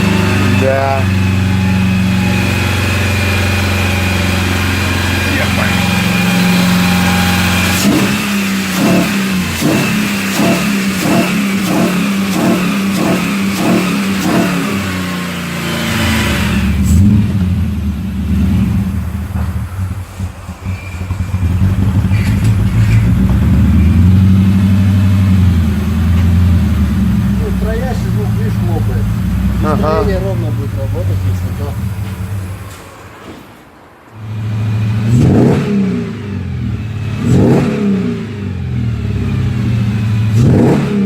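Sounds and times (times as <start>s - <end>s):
engine popping: 0.0s - 15.2s, 15.9s - 32.7s
car engine idling unevenly: 0.0s - 35.1s.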